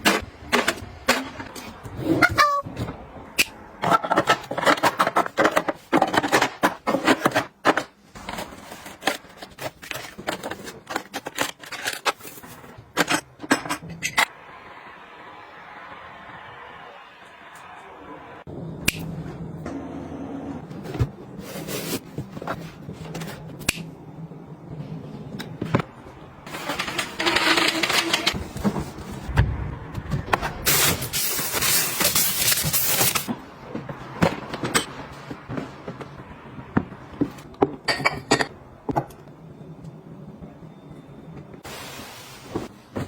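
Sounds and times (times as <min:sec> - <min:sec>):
household items clicking and knocking: 0:03.8 - 0:14.1.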